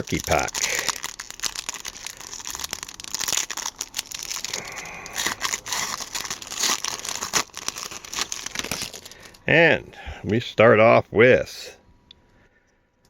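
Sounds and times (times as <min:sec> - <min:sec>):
wrapper tearing and crinkling: 0:00.0 - 0:09.4.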